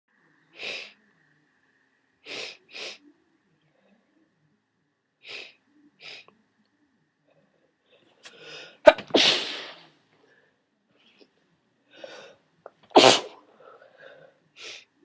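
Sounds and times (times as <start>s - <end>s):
person sneezing wetly: 8.9s - 9.8s, 12.9s - 13.4s.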